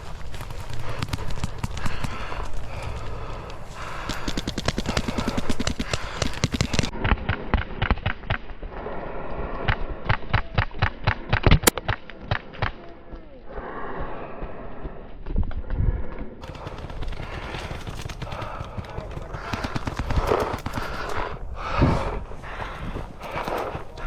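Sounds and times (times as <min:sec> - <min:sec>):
paintball markers firing: 0:00.0 - 0:08.5, 0:16.4 - 0:24.0
wind rumble on microphone: 0:14.5 - 0:17.1, 0:19.4 - 0:24.0.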